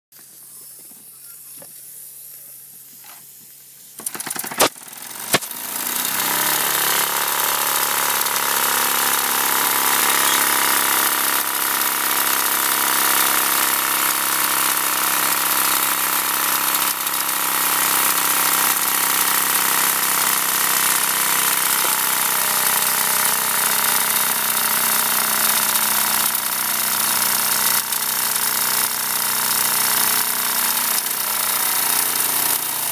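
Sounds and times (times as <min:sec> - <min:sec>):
sharp clicks: 0:04.0 - 0:05.6, 0:20.9 - 0:24.8
toy steam engine whirring: 0:04.0 - 0:32.9.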